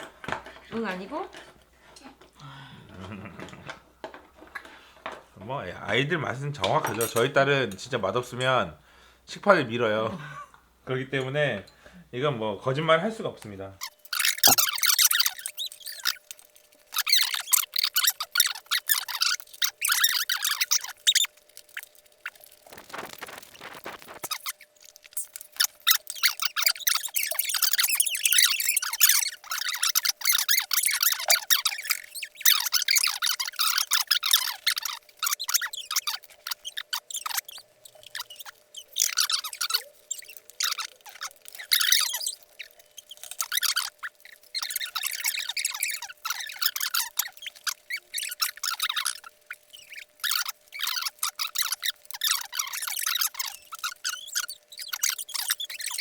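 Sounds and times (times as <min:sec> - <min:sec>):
wet chewing mouth noises: 0:13.8 - 0:56.0.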